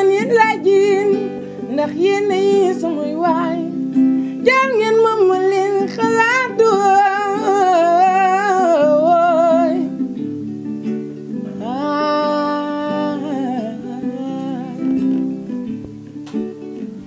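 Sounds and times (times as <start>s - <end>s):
acoustic guitar: 0.0s - 17.0s
person singing wordless notes: 4.4s - 9.9s, 11.6s - 15.4s.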